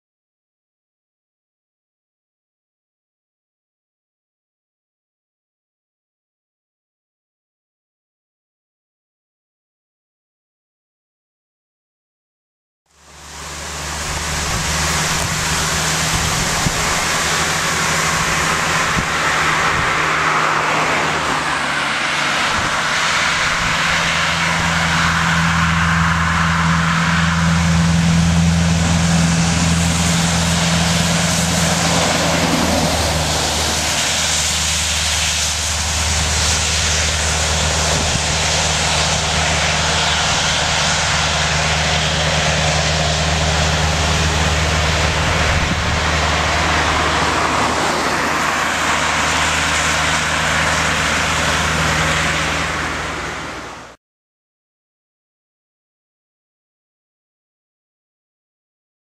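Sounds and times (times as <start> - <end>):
truck diesel engine droning: 12.9 - 54.0.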